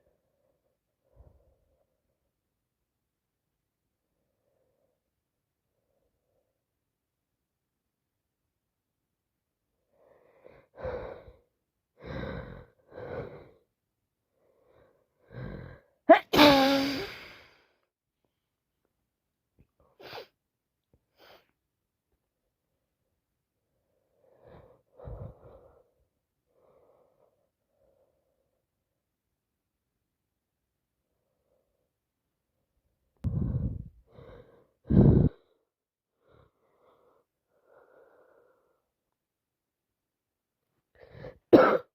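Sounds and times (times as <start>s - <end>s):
person sneezing: 16.1s - 17.2s, 41.6s - 41.9s.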